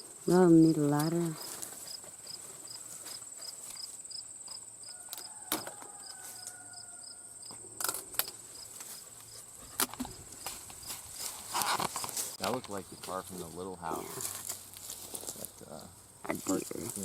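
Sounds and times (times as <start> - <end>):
insect high-pitched trill: 0.0 - 13.5
insect chirping: 0.0 - 17.0.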